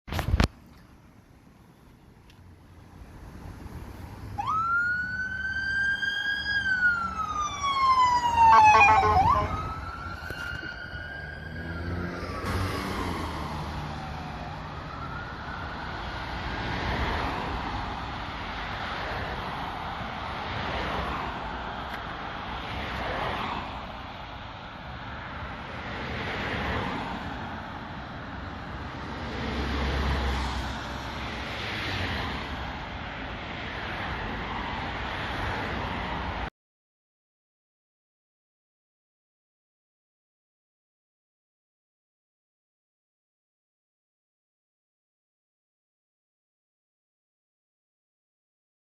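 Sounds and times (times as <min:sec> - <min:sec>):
passing traffic: 0:00.1 - 0:36.5
ambulance siren wailing: 0:04.4 - 0:16.4
low horn honks: 0:08.4 - 0:09.6.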